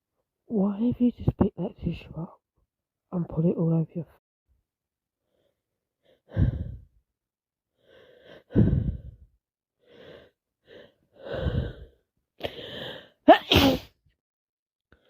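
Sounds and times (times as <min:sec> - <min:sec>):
woman gasping breaths: 0:05.3 - 0:07.0, 0:07.8 - 0:13.2.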